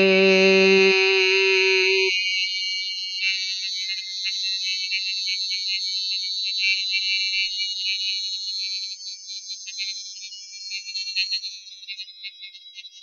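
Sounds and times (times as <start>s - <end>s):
high-pitched shimmering drone: 0.0s - 2.1s.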